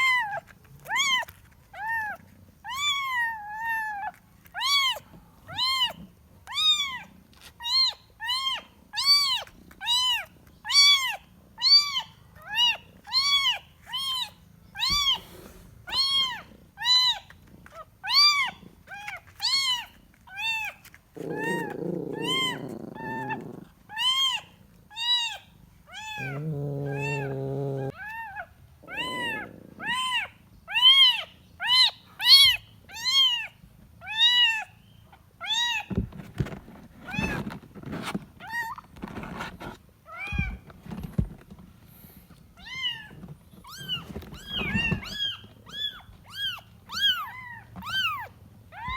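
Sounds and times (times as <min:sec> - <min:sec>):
kitten meowing: 0:19.4 - 0:33.5.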